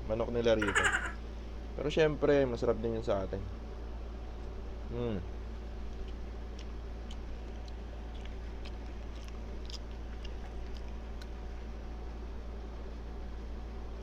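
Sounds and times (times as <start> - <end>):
chicken being pulled apart and eaten: 5.8 - 11.8.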